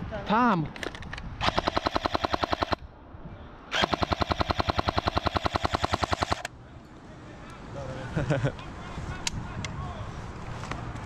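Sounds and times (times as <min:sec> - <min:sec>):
airsoft gun firing bursts: 0:01.4 - 0:02.8, 0:03.7 - 0:06.5.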